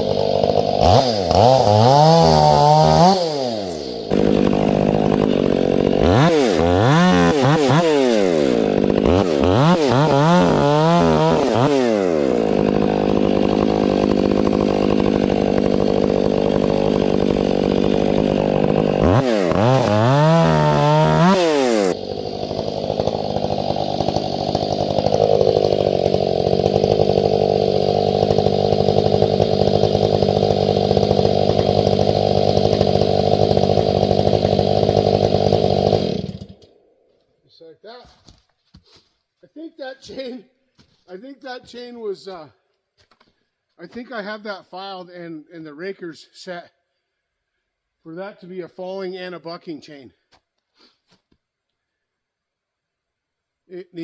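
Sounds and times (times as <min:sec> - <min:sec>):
chainsaw cutting firewood: 0:00.0 - 0:36.9.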